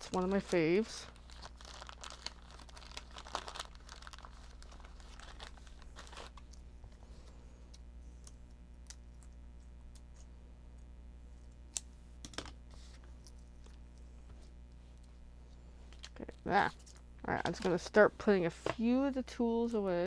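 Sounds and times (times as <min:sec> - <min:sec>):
packaging crinkling: 0:00.0 - 0:06.7.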